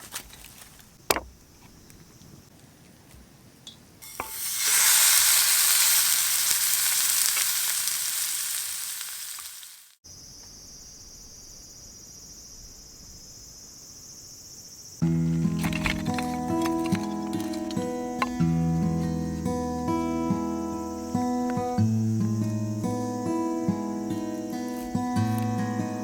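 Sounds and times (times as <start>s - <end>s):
meat sizzling in a hot pan: 4.0s - 10.0s.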